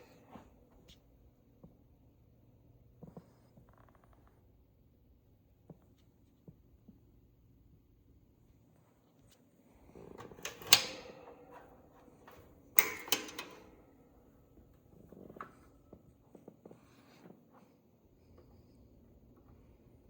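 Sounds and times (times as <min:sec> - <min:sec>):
fan handling clicks and knocks: 0:10.1 - 0:13.7.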